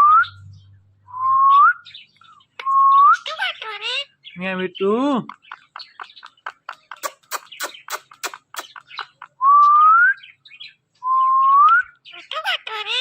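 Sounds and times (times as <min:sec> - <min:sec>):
parrot clicking: 0:05.2 - 0:09.2.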